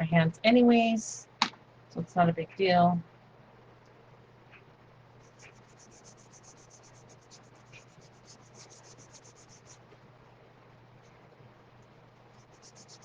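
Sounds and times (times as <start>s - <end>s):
paint brush scrubbing on wood: 5.2s - 9.8s, 12.4s - 13.0s.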